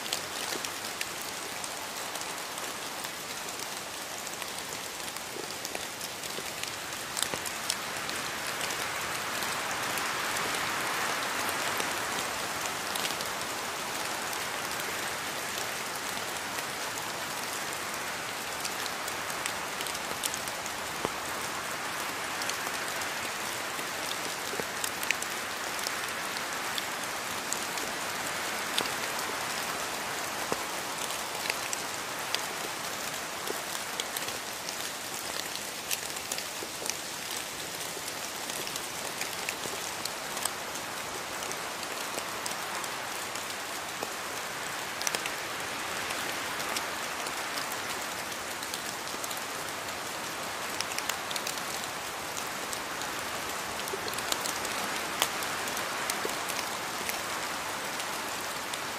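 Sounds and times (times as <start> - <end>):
steady rain hiss: 0.0 - 58.9.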